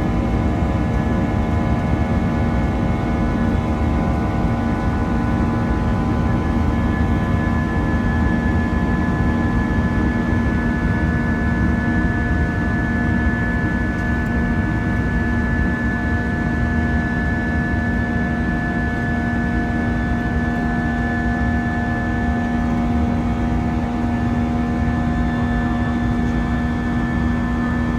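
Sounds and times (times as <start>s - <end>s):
jet engine rumble in cabin: 0.0s - 27.9s
jet engine whining tones: 17.2s - 27.9s.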